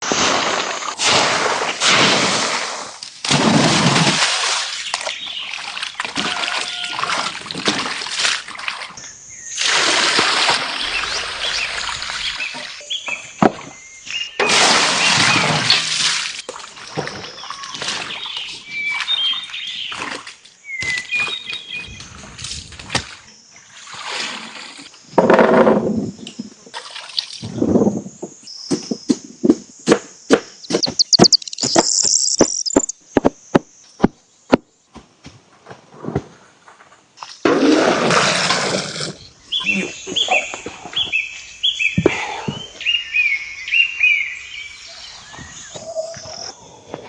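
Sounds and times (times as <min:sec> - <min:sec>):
water splashing and sloshing: 0:00.0 - 0:13.8, 0:14.4 - 0:25.6, 0:26.7 - 0:27.6
bird chirps: 0:10.8 - 0:14.4, 0:20.6 - 0:22.0, 0:30.6 - 0:33.0, 0:39.2 - 0:46.5.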